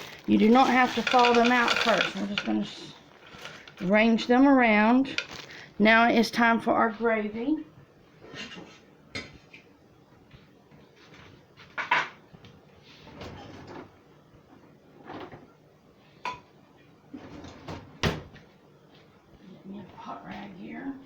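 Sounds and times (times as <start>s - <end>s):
dishes and pans clattering: 0.4s - 2.7s.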